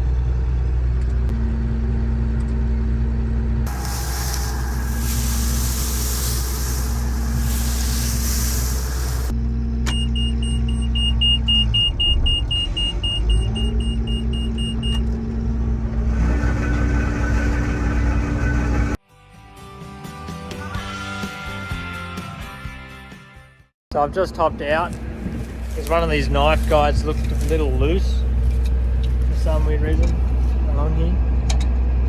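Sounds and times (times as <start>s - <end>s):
diesel engine running: 0.0s - 19.0s, 24.0s - 32.0s
hiss: 3.7s - 9.3s.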